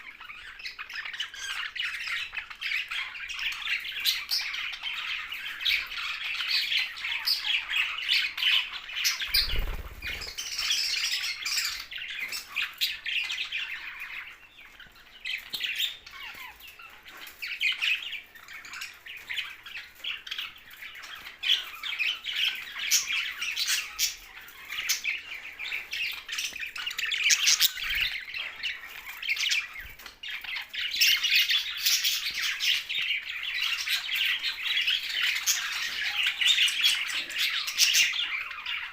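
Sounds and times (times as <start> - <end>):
budgerigars chattering: 20.2 - 38.9.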